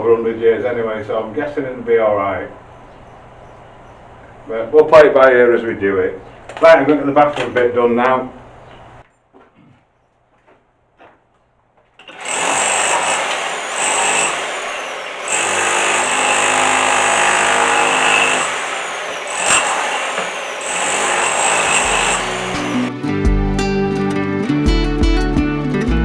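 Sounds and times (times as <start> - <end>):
power tool running: 12.0 - 22.9.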